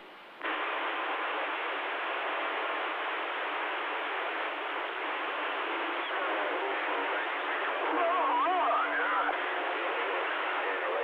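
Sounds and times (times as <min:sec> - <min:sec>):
radio static hiss: 0:00.0 - 0:11.0
faint voice over radio: 0:05.6 - 0:11.0.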